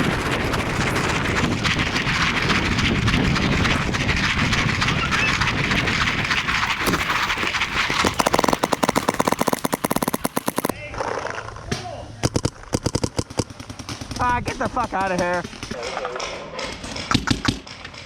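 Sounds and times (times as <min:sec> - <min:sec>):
paintball marker rapid fire: 0:00.0 - 0:10.7, 0:12.2 - 0:14.4
dense continuous clatter: 0:00.0 - 0:11.7.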